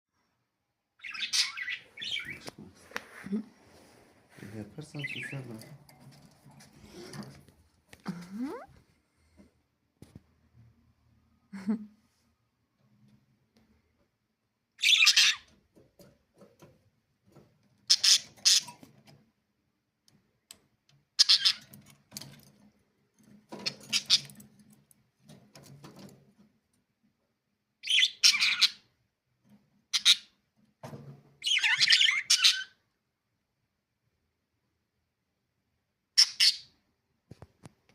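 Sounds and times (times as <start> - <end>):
budgerigars squawking and chirping: 1.0 - 2.5, 14.8 - 15.5, 17.9 - 18.8, 21.2 - 21.7, 23.6 - 24.4, 27.8 - 28.8, 31.4 - 32.8, 36.2 - 36.6.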